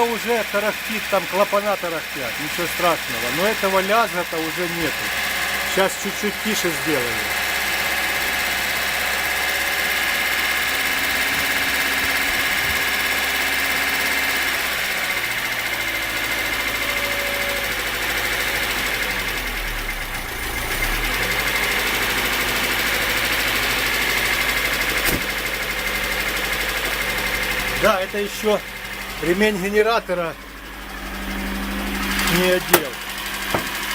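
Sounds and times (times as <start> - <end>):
valve chatter: 0.0 - 19.4
car engine idling: 0.0 - 33.9.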